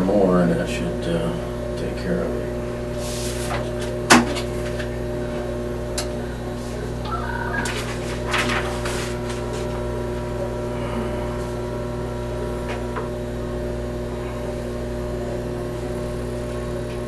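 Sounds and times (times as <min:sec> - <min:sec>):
steady electrical hum: 0:00.0 - 0:17.0
two steady high tones: 0:07.0 - 0:08.0.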